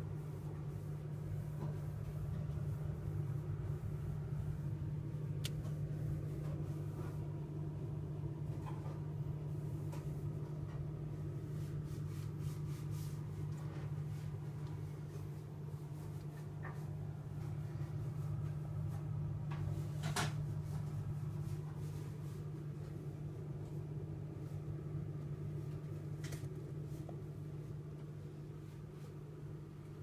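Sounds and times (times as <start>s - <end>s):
refrigerator humming: 0.0s - 30.0s.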